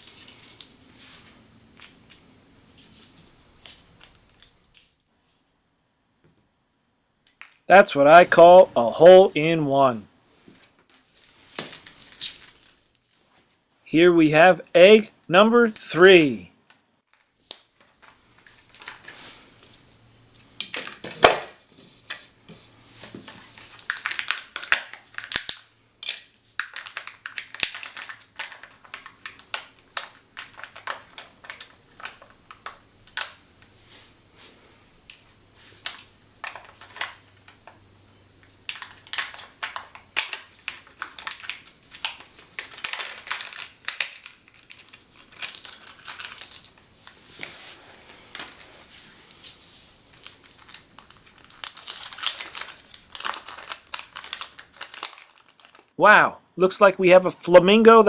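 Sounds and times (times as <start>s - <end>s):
foil wrapper crinkling and tearing: 10.7s - 13.0s, 17.1s - 19.8s, 20.6s - 21.5s, 23.3s - 33.4s, 35.8s - 37.6s, 38.6s - 56.0s
chocolate shell cracking: 23.8s - 33.4s, 38.6s - 46.8s, 50.1s - 55.9s.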